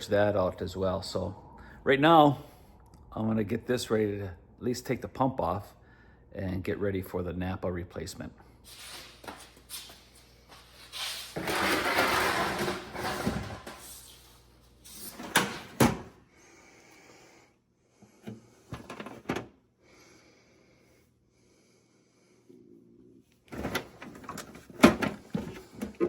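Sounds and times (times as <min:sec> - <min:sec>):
rustling and scraping of tools: 0:08.6 - 0:15.8, 0:18.0 - 0:19.5, 0:23.4 - 0:26.0.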